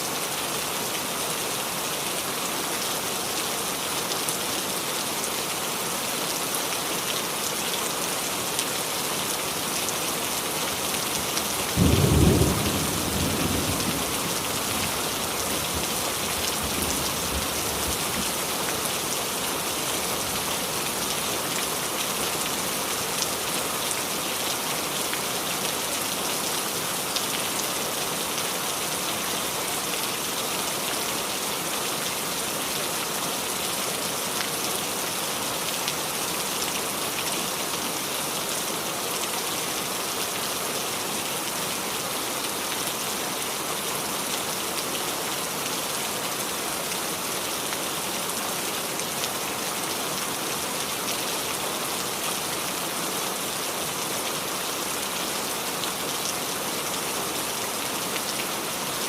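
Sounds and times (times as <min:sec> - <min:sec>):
rain falling on leaves: 0:00.0 - 0:59.0.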